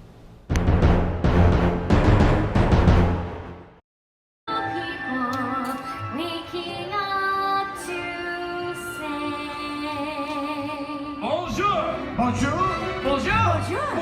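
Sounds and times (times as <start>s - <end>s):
orchestra playing: 0.5s - 3.7s, 11.5s - 14.0s
woman singing with vibrato: 4.5s - 11.2s.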